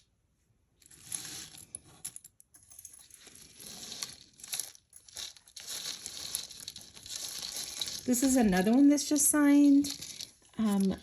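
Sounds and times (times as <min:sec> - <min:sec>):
packaging rustling: 0:03.3 - 0:11.0.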